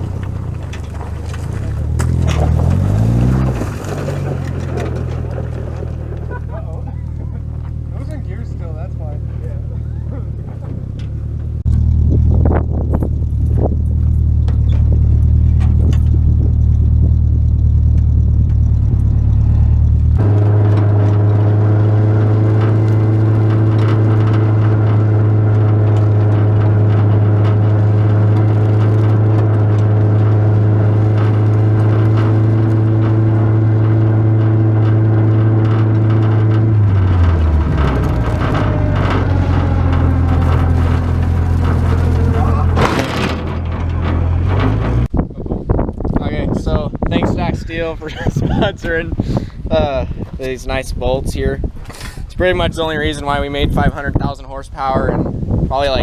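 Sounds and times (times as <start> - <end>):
clicks and rattles: 0.0 - 8.2, 12.8 - 45.2
engine running: 0.0 - 56.0.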